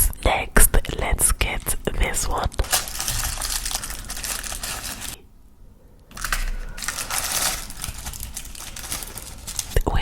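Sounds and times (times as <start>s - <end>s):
plastic packaging crinkling: 1.6s - 5.2s, 6.1s - 10.0s.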